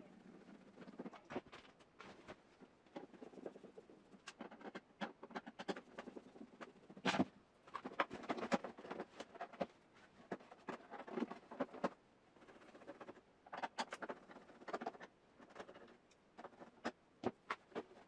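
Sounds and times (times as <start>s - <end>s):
plastic parts clicking and scraping: 0.2s - 18.0s.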